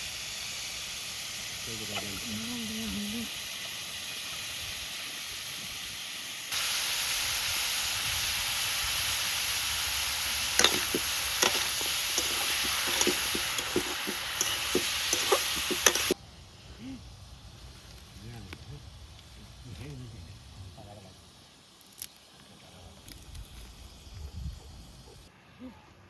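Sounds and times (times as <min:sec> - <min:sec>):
food sizzling in hot oil: 0:00.0 - 0:16.2.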